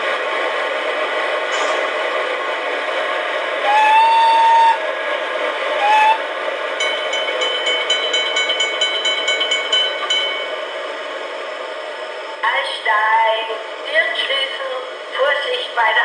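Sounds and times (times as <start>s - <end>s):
model locomotive running sound: 0.0s - 16.0s
model train whistle: 3.6s - 4.8s, 5.8s - 6.2s.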